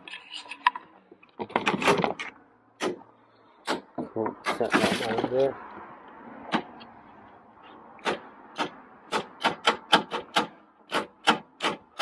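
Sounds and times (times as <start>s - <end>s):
sharp irregular trim clicks: 8.0s - 12.0s.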